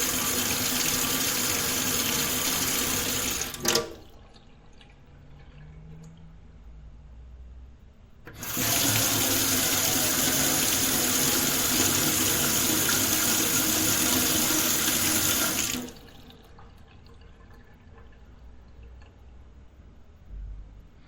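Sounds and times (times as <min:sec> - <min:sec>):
tap water running into metal sink: 0:00.0 - 0:04.1, 0:08.3 - 0:17.6.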